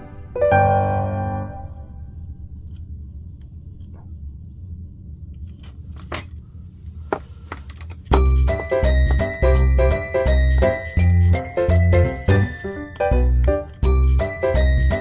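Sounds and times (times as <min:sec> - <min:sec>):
background piano music: 0:00.0 - 0:02.1, 0:08.1 - 0:15.0
low hum: 0:00.0 - 0:07.1
chiming background music: 0:08.2 - 0:15.0.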